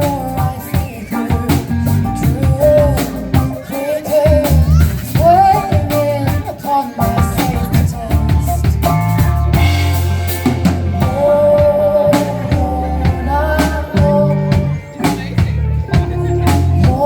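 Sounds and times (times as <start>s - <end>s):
bass line: 0.0s - 17.0s
drum kit: 0.0s - 17.0s.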